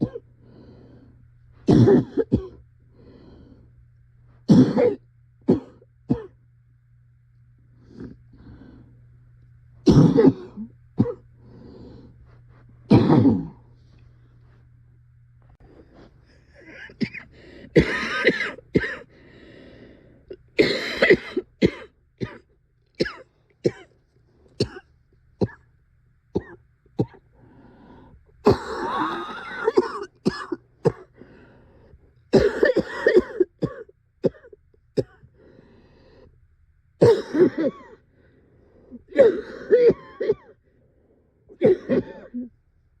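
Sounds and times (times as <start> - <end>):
person coughing: 0.0 - 0.3, 1.6 - 2.6, 4.5 - 6.4, 9.8 - 11.3, 12.9 - 13.6, 16.5 - 19.1, 20.6 - 23.9, 24.6 - 25.7, 26.4 - 27.2, 28.4 - 31.2, 32.3 - 35.3, 37.0 - 38.0, 39.1 - 40.6, 41.6 - 42.6.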